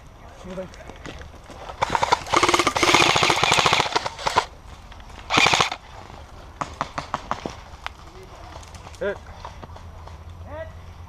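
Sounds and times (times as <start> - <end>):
airsoft rifle firing bursts: 1.8 - 4.5, 5.3 - 5.8.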